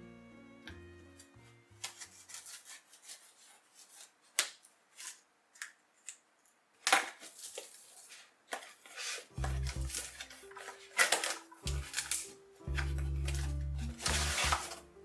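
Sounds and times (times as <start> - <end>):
rustling scrape: 1.8 - 4.2, 7.2 - 14.8
packaging rubbing and tapping: 6.9 - 14.9.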